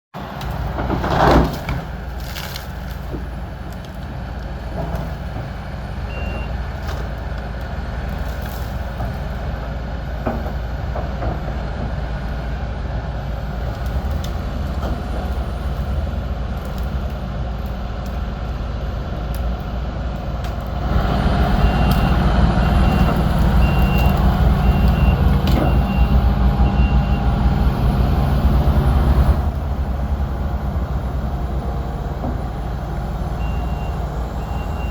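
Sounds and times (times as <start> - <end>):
heavy vehicle engine running: 0.2 - 34.9
reversing alarm beeping: 6.1 - 6.6, 21.4 - 27.6, 33.4 - 34.9.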